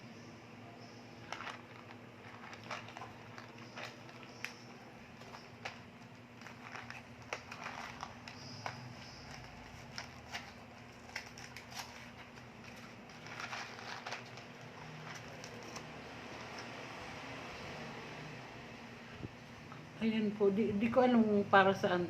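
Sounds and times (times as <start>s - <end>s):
faint steady hum: 0.0s - 22.0s
plastic crinkling: 0.8s - 16.8s.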